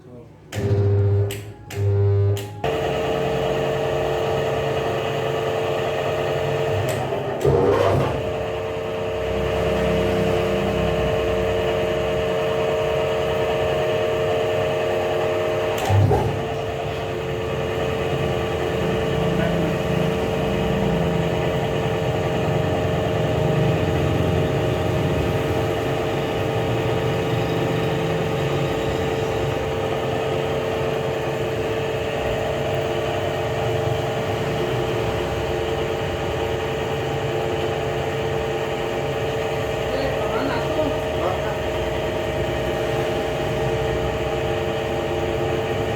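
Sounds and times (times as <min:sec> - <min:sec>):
electric motor hum: 0:00.6 - 0:45.9
machine clunk: 0:15.7 - 0:16.6.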